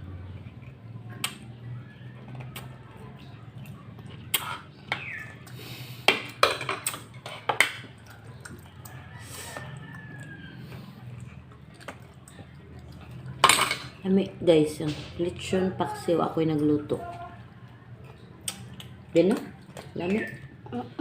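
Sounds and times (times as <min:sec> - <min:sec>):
utensils clinking on dishes: 0:04.0 - 0:10.1, 0:11.2 - 0:14.1.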